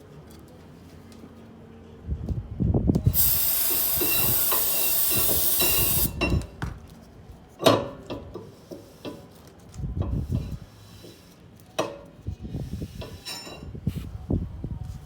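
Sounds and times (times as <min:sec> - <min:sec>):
aerosol spray hissing: 0:03.1 - 0:06.1.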